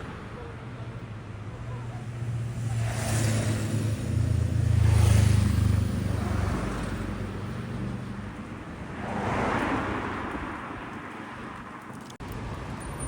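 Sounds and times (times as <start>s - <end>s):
vehicle passing by: 1.8s - 11.7s.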